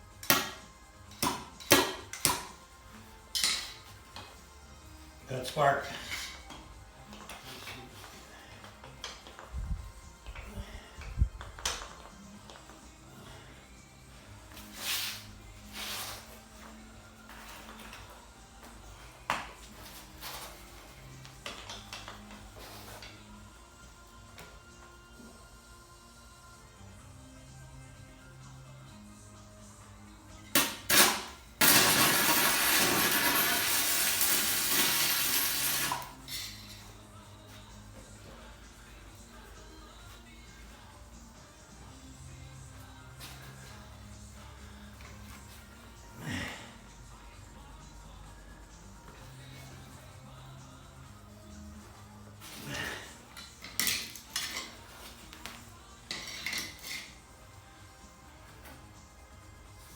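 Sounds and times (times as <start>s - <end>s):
welding arc crackling: 30.8s - 36.2s
welding arc sputtering: 30.8s - 36.2s
metallic clattering and scraping: 53.4s - 55.2s, 56.1s - 57.3s.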